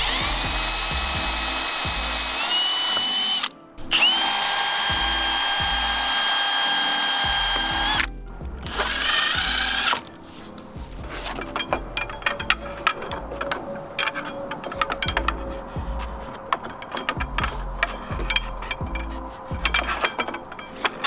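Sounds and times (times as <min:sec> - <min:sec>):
cordless drill whine: 0:00.0 - 0:08.1, 0:08.7 - 0:10.0.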